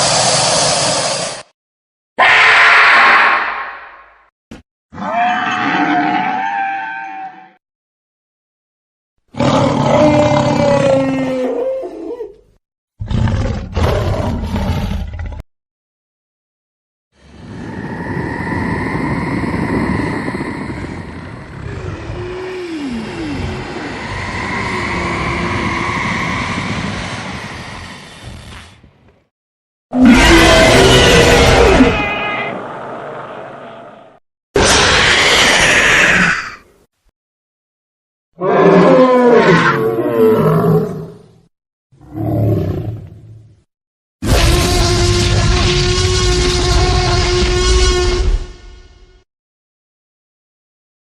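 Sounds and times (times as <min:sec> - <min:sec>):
monster roar: 0:09.4 - 0:11.8, 0:17.4 - 0:28.8, 0:29.9 - 0:32.5, 0:34.6 - 0:36.6, 0:38.4 - 0:41.1
loud noisy hum: 0:17.3 - 0:28.4
monster high-pitched cries: 0:30.0 - 0:32.6.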